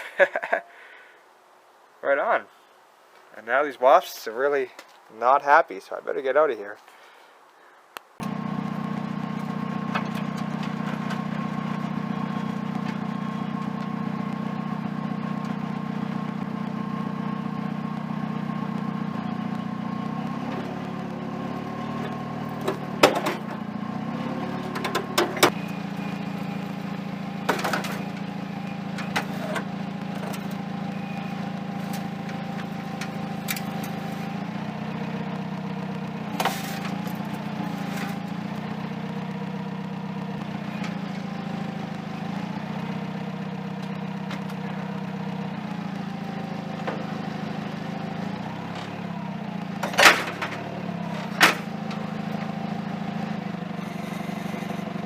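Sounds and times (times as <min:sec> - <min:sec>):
truck engine running: 0:08.2 - 0:55.0.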